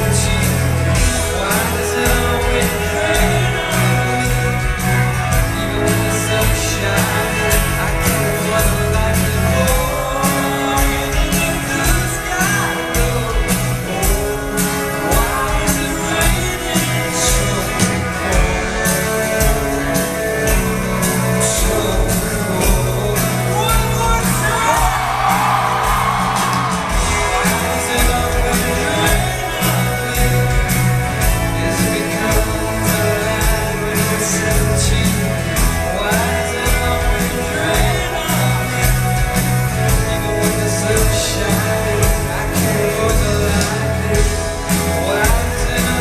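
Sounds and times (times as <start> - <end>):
drums keeping a beat: 0.0 - 46.0
live rock band playing: 0.0 - 46.0
person singing: 0.0 - 46.0
crowd shouting: 23.6 - 31.0.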